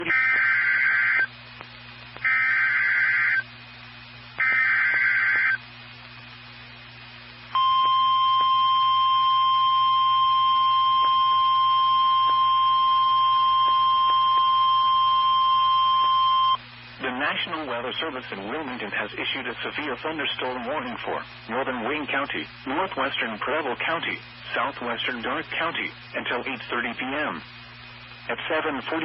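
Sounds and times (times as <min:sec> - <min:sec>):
steady warning alarm tone: 0:00.0 - 0:01.3, 0:02.2 - 0:03.4, 0:04.4 - 0:05.6, 0:07.6 - 0:16.6
screeching digital data bursts: 0:04.4 - 0:05.6.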